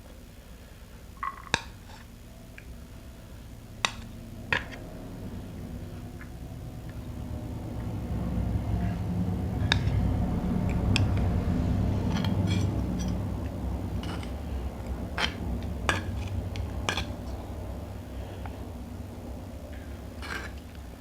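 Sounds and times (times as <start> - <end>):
low rumble: 2.4 - 20.8
cutlery clinking against a dish: 15.2 - 17.4.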